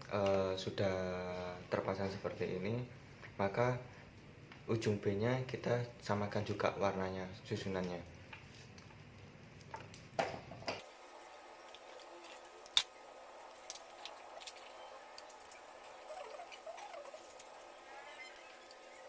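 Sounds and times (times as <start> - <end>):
hands rustling wires: 11.6 - 19.0.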